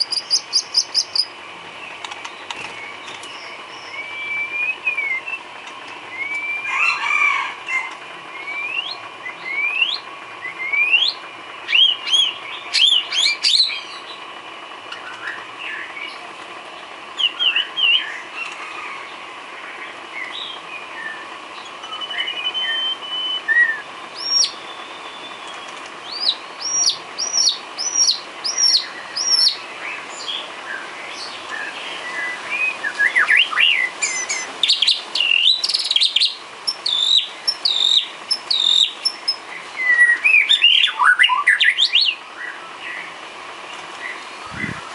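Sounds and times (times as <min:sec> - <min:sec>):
bird singing whistles and chirps: 0:00.0 - 0:01.3, 0:02.3 - 0:05.5, 0:06.1 - 0:06.9, 0:08.3 - 0:14.2, 0:17.2 - 0:18.6, 0:20.2 - 0:43.1
faint steady hum: 0:00.0 - 0:44.9.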